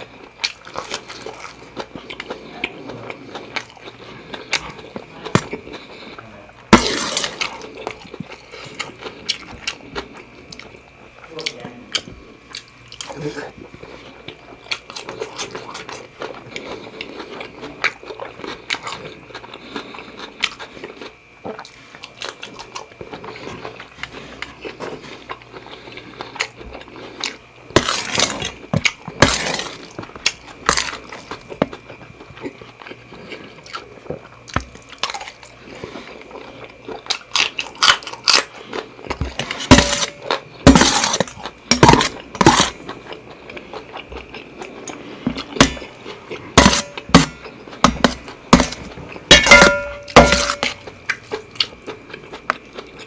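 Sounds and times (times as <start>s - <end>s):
chewing and biting: 0.0s - 53.0s.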